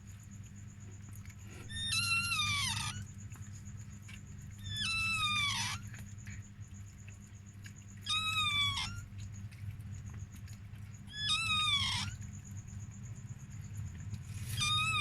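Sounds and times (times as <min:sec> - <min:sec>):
dog whining: 0:01.7 - 0:03.0, 0:04.6 - 0:05.9, 0:08.0 - 0:09.1, 0:11.1 - 0:12.2, 0:14.5 - 0:15.0.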